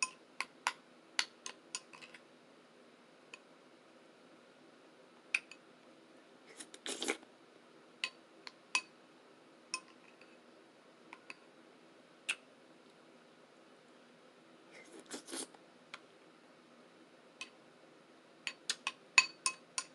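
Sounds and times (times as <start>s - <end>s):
spoon clinking against bowl: 9.8s - 10.3s, 18.5s - 19.9s.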